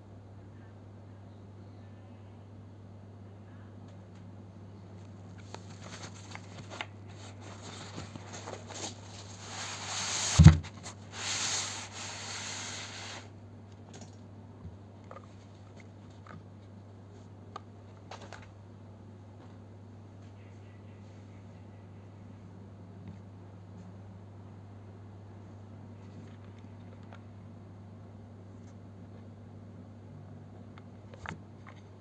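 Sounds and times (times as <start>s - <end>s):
packaging rustling and tearing: 5.4s - 12.0s
loud thud: 10.3s - 10.7s.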